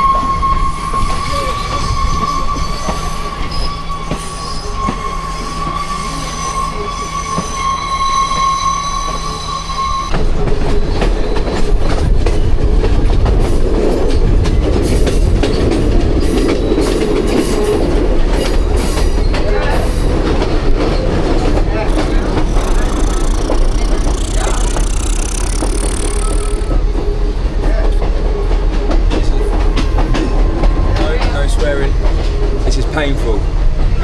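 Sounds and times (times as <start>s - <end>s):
train wheel squeal: 21.9s - 26.7s.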